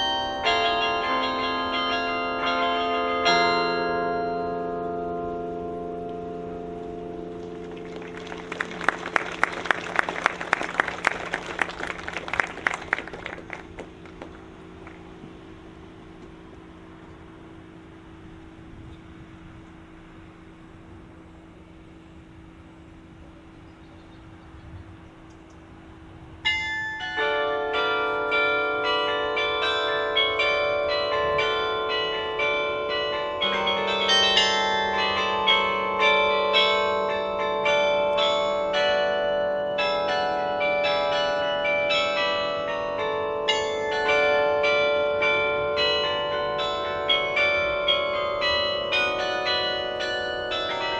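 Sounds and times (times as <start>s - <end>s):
bells ringing: 0.0s - 23.7s, 25.9s - 50.9s
audience clapping: 7.3s - 15.1s.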